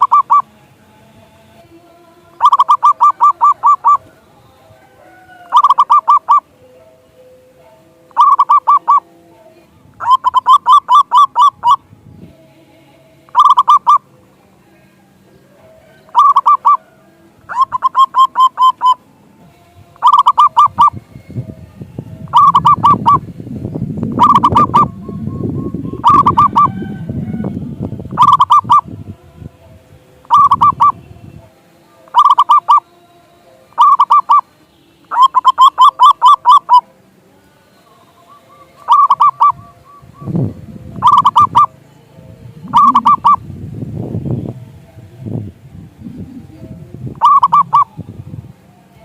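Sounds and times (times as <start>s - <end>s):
dove cooing: 0.0s - 0.5s, 2.4s - 4.1s, 4.8s - 6.5s, 8.1s - 9.1s, 10.0s - 11.8s, 13.3s - 14.1s, 15.6s - 19.0s, 20.0s - 21.0s, 22.2s - 23.2s, 24.1s - 27.5s, 28.1s - 28.9s, 30.2s - 31.0s, 32.1s - 32.8s, 33.7s - 34.4s, 35.1s - 36.9s, 38.1s - 43.4s, 45.9s - 48.0s.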